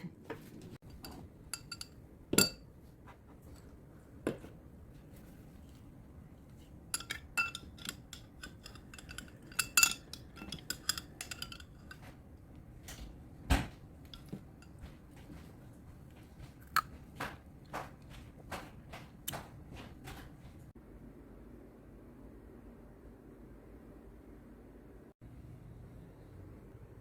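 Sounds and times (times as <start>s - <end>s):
dishes and utensils clinking: 0.3s - 3.7s, 6.6s - 15.5s.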